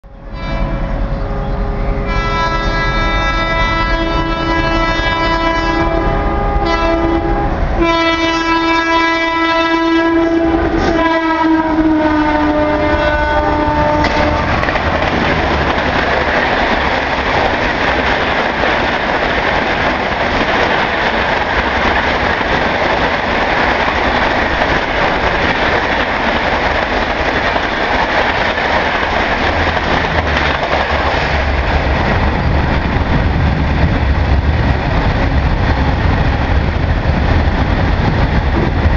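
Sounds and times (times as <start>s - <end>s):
locomotive horn blasts: 0.2s - 14.7s
train coaches rushing and clattering: 0.4s - 38.9s.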